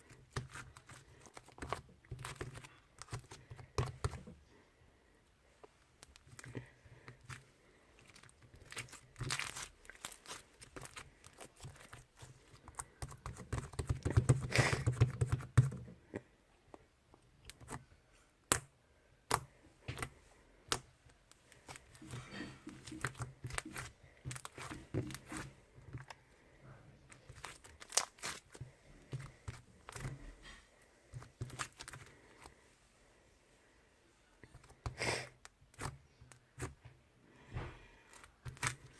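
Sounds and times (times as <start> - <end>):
slime crackling and squelching: 0.0 - 4.2, 5.9 - 14.8, 19.3 - 26.2, 27.1 - 30.4, 31.1 - 32.6, 38.1 - 38.9.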